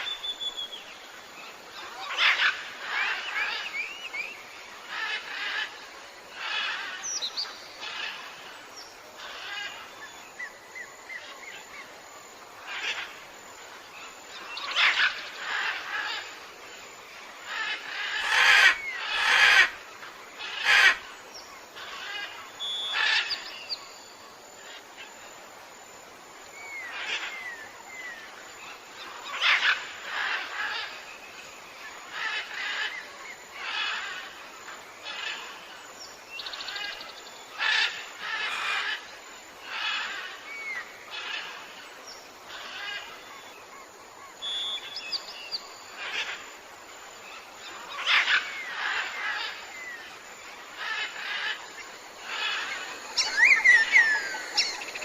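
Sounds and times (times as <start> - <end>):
faint steady hiss: 0.0 - 55.0
jungle birds calling: 0.0 - 55.0.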